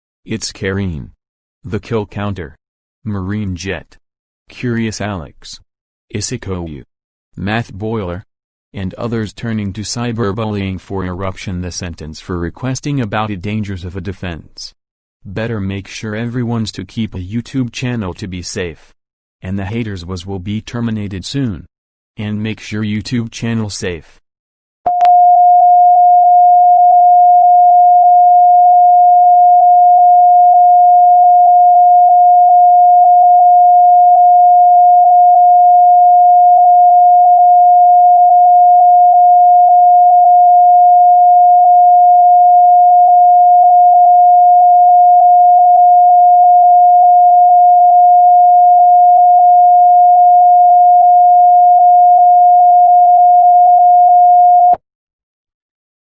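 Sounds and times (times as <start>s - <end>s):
electronic sine tone: 24.9s - 54.8s.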